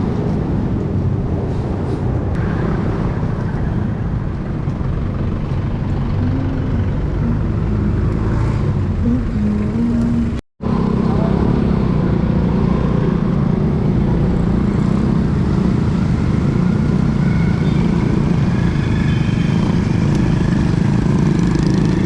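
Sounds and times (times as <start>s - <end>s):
motor traffic: 0.0s - 22.0s.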